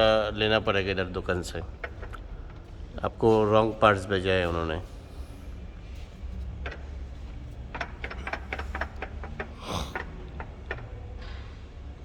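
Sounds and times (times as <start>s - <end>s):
steady low hum: 0.0s - 10.7s
sharp clicks and light knocks: 1.6s - 2.8s, 5.9s - 11.2s.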